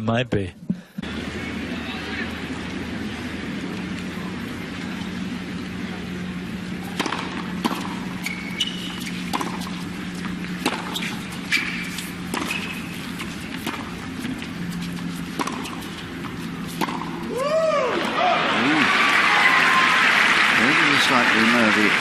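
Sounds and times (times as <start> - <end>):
steady low hum: 0.0 - 18.1
rackets striking tennis ball: 6.6 - 17.4
shoe squeaks: 8.1 - 16.8.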